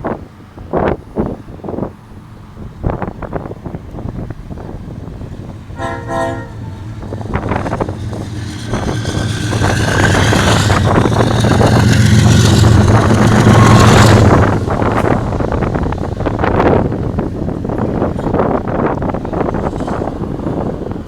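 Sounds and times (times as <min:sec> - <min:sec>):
train engine rumble: 0:00.0 - 0:21.0
locomotive horn blast: 0:05.7 - 0:07.9, 0:08.5 - 0:15.8.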